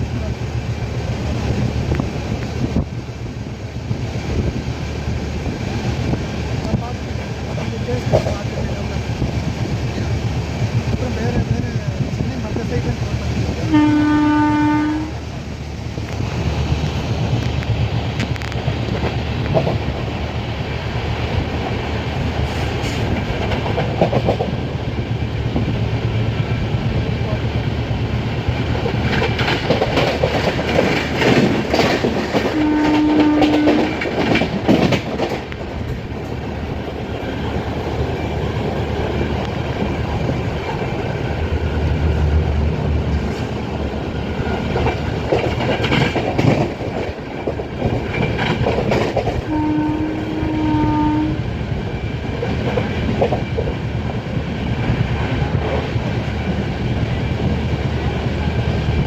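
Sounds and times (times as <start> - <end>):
train rumbling along track: 0.0 - 59.0
locomotive horn blasts: 13.7 - 15.2, 32.4 - 34.0, 49.5 - 51.5.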